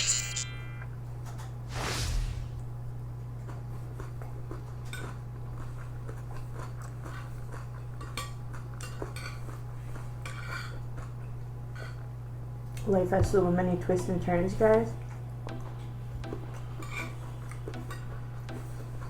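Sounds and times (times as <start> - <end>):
steady low hum: 0.0 - 3.1, 12.2 - 19.0
chewing and biting: 3.4 - 11.4.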